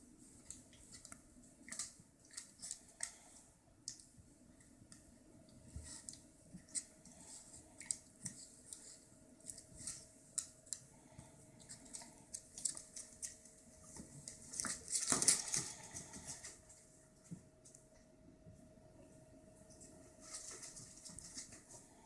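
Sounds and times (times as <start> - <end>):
rustling: 5.6 - 17.5, 19.7 - 22.0
dog and cat scuffling: 5.6 - 17.9, 19.5 - 22.0.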